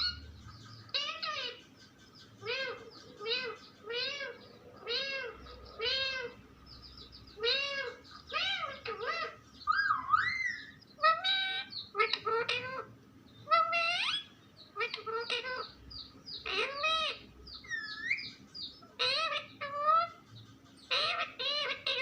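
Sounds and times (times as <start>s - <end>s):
parrot chattering: 0.0s - 22.0s.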